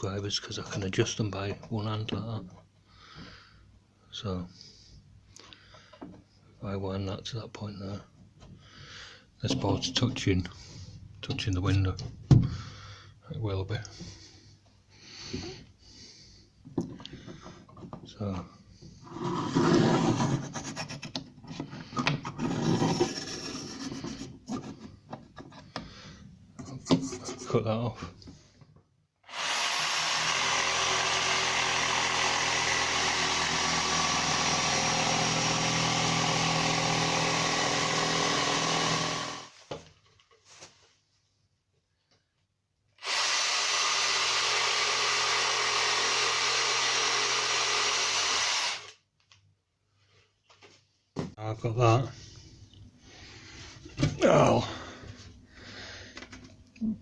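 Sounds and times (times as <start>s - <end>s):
dividers scraping along a board: 19.0s - 25.0s
electric power tool motor whining: 29.3s - 39.6s, 43.0s - 49.0s.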